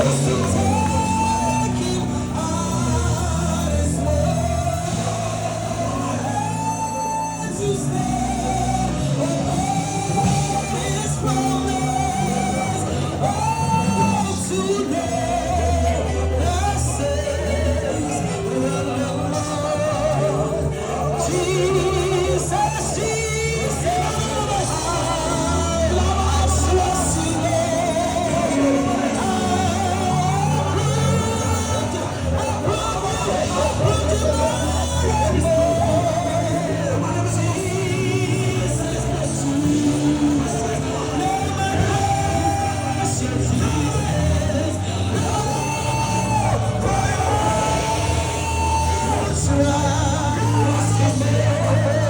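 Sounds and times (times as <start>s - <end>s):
band with bass and guitar: 0.0s - 52.0s
voices singing long notes: 0.0s - 52.0s.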